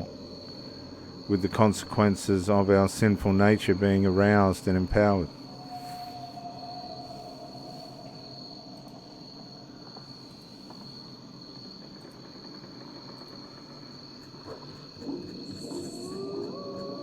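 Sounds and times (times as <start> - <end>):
high-pitched whine: 5.2 - 10.8, 14.2 - 17.0
soft gliding tones: 5.4 - 9.9.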